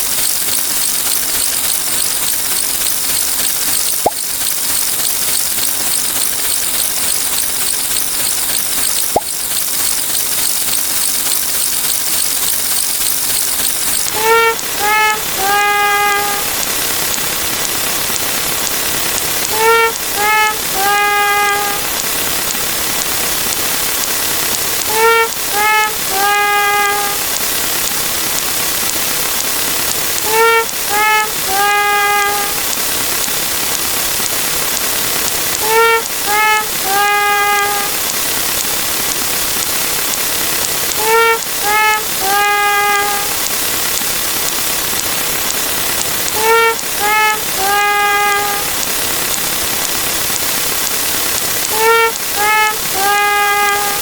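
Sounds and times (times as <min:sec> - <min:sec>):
steady loud hiss: 0:00.0 - 0:54.0
sad trombone sound effect: 0:14.1 - 0:16.6, 0:19.5 - 0:21.9, 0:24.8 - 0:27.3, 0:30.2 - 0:32.6, 0:35.6 - 0:38.0, 0:41.0 - 0:43.5, 0:46.3 - 0:48.8, 0:51.7 - 0:54.0.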